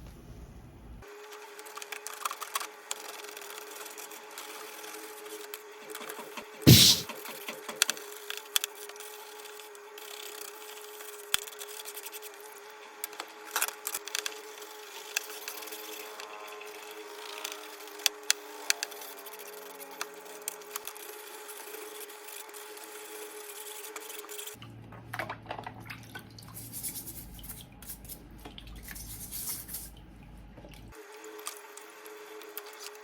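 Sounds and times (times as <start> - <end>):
wet scrubbing: 26.5 - 30.0.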